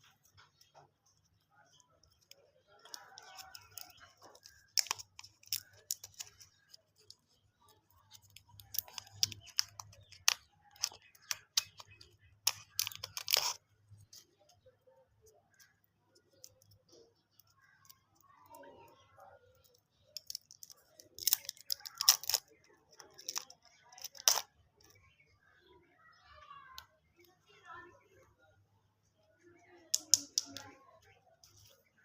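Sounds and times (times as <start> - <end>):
plastic wrappers crinkling: 1.7 - 14.3, 20.1 - 24.4.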